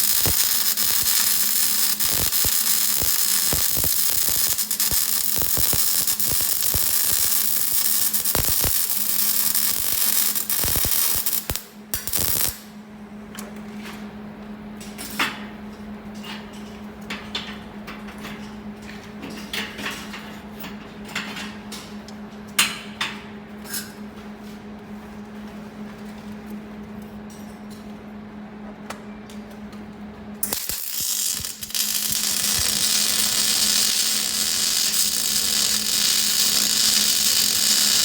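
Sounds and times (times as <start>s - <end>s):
arc welding crackling: 0.0s - 12.7s, 30.4s - 38.0s
steady hum: 0.0s - 13.3s, 30.4s - 38.0s.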